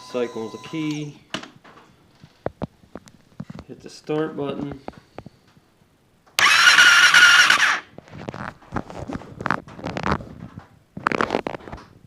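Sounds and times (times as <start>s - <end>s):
electric starter cranking engine: 6.4s - 7.9s.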